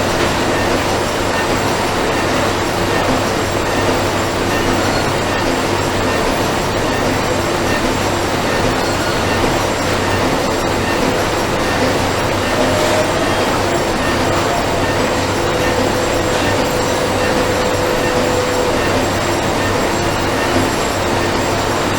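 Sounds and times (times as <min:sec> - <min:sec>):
faint steady tones: 0:00.0 - 0:21.9
machinery running: 0:00.0 - 0:21.9
thin tone: 0:08.4 - 0:21.9
low hum: 0:10.2 - 0:21.1.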